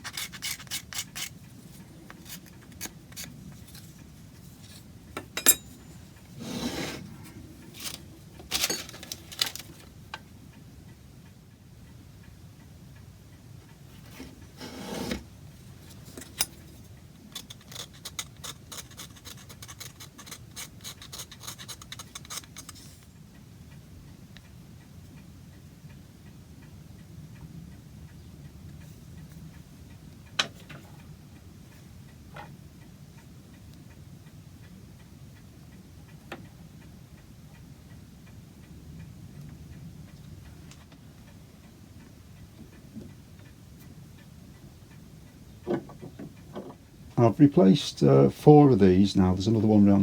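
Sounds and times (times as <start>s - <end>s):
hand tool rasping wood: 0.0s - 1.3s, 14.6s - 15.2s, 17.4s - 22.7s
scrapes on wood: 6.4s - 7.1s, 14.1s - 15.3s.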